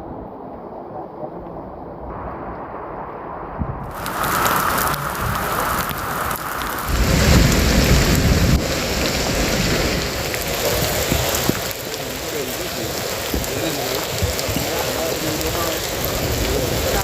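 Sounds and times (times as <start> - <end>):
deep rumble: 0.0 - 17.0
heavy rain pouring: 3.6 - 17.0.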